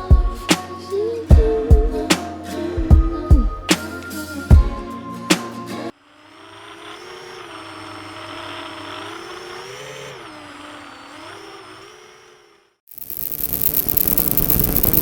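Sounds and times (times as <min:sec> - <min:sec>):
music: 0:00.0 - 0:05.9
quadcopter motors whining: 0:05.9 - 0:15.0
hiss: 0:06.2 - 0:15.0.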